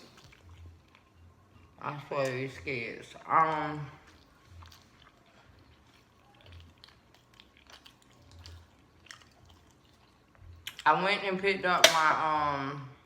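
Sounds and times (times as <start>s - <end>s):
quiet chewing: 0.0s - 2.4s, 3.1s - 10.9s.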